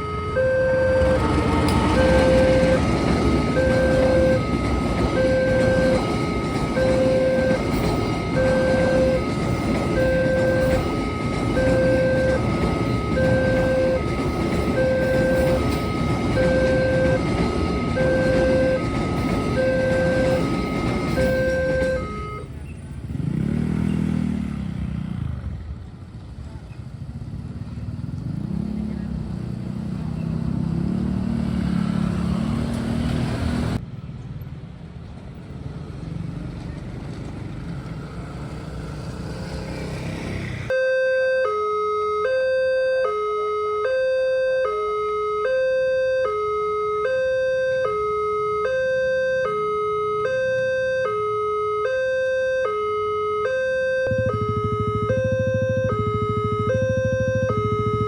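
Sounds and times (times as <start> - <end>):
level-crossing alarm two-tone warning: 0.0 - 22.6, 40.7 - 58.0
road traffic: 0.0 - 58.0
motorcycle engines running: 1.0 - 40.7, 54.0 - 58.0.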